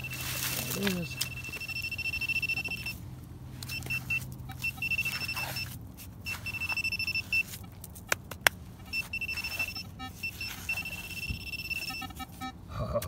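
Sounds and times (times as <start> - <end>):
pinpointer high-pitched alert tone: 0.0 - 3.0, 3.7 - 5.7, 8.9 - 12.2.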